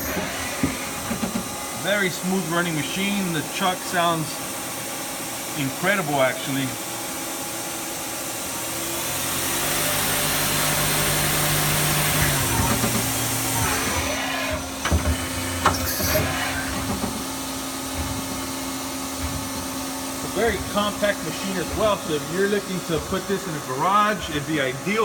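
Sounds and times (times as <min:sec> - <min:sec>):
lathe spindle whirring: 0:00.0 - 0:05.6, 0:07.8 - 0:25.0
sharp knocks: 0:14.8 - 0:22.1.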